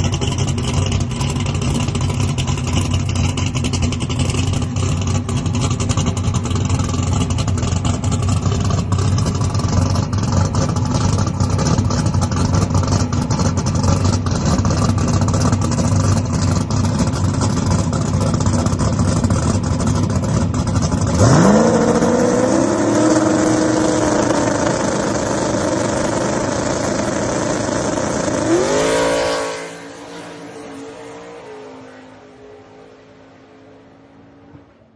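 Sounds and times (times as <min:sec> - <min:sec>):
race engine idling: 0:00.0 - 0:29.6.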